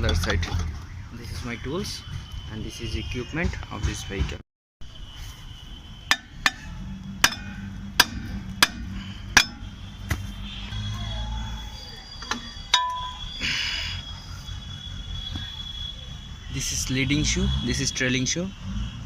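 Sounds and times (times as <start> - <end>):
metal tools tapping brake parts: 6.1 - 9.6, 12.2 - 13.2.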